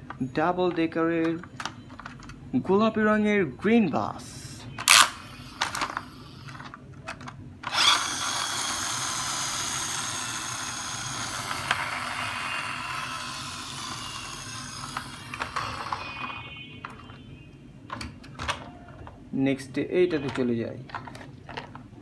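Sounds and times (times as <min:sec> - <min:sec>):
toy wheel mechanism whirring: 0:04.8 - 0:06.8, 0:07.6 - 0:17.2.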